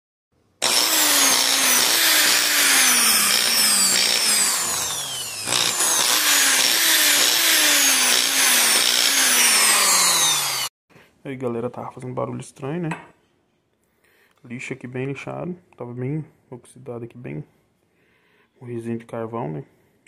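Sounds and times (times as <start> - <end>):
electric motor running unevenly: 0.6 - 10.7.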